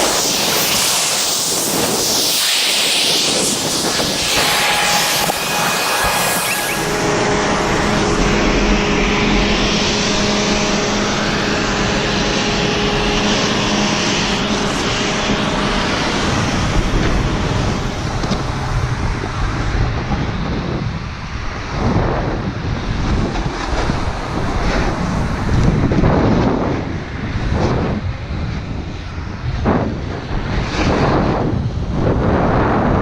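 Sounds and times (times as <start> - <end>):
snowboard scraping snow: 0.0 - 19.0, 23.0 - 26.6
steady hum: 0.0 - 33.0
wind on microphone: 0.0 - 33.0.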